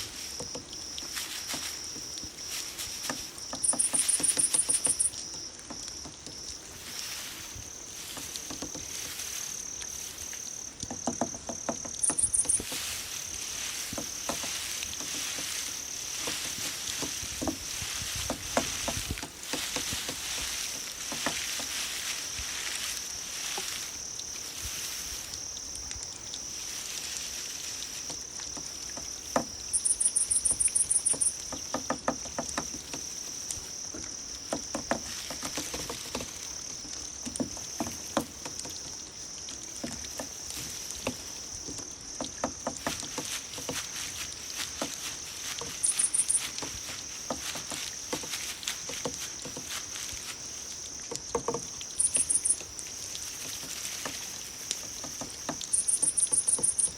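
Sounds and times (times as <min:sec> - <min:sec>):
crickets trilling: 0:00.0 - 0:56.9
loud pulsed insect trill: 0:00.2 - 0:05.5, 0:11.9 - 0:14.8, 0:27.4 - 0:32.4, 0:43.8 - 0:51.0, 0:51.8 - 0:53.9, 0:55.6 - 0:56.9
soft clicks and patter: 0:24.7 - 0:56.9.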